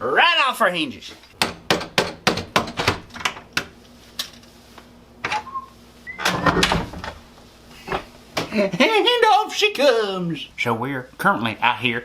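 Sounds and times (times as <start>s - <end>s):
hinge pins being knocked out: 1.4s - 3.7s, 6.2s - 7.2s.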